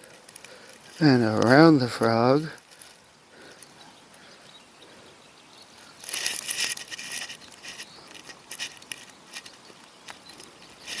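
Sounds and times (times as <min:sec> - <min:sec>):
rustling of plastic lure: 0:02.5 - 0:03.8, 0:06.0 - 0:11.0.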